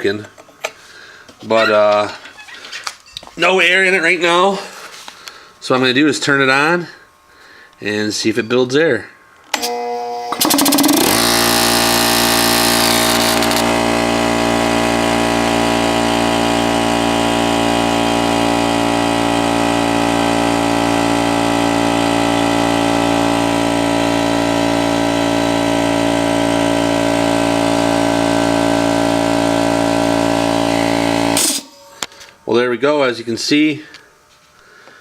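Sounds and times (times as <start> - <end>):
air compressor running: 9.5 - 32.6.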